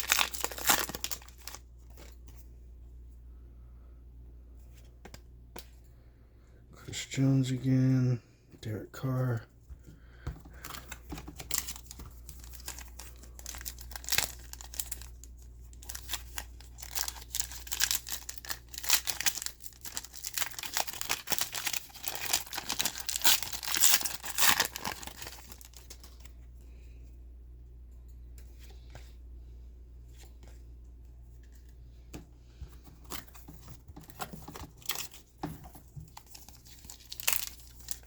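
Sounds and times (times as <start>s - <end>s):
plastic wrappers tearing and crinkling: 0.0s - 2.1s, 10.8s - 26.3s, 34.0s - 38.0s.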